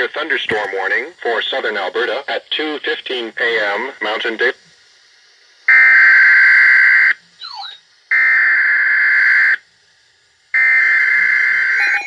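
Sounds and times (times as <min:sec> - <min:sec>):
buzzy high-pitched data tones: 0:11.6 - 0:12.0.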